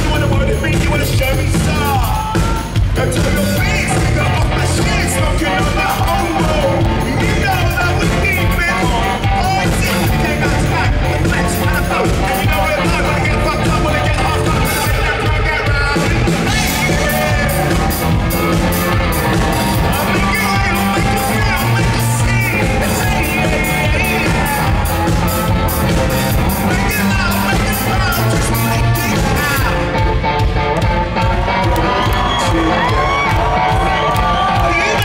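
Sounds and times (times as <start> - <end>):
person singing: 0.0 - 30.2
rock band playing live: 0.0 - 35.0
steady driving drumbeat: 0.0 - 35.0.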